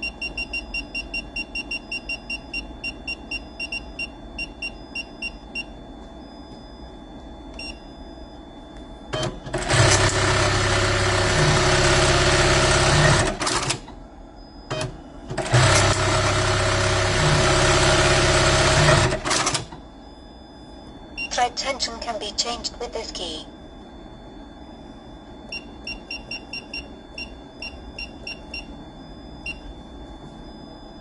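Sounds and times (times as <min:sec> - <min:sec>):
sewing machine running: 0:09.5 - 0:13.8, 0:15.4 - 0:19.6.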